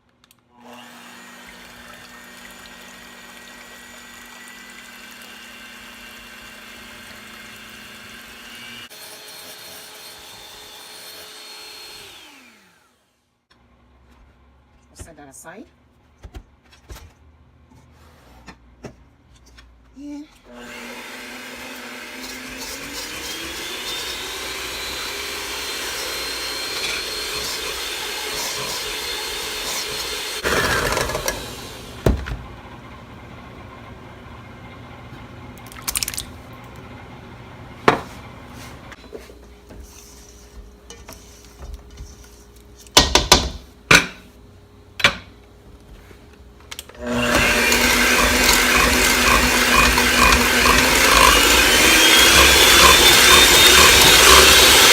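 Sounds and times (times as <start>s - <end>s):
kitchen appliance motor running: 0.6s - 8.9s, 20.5s - 32.4s, 47.0s - 54.9s.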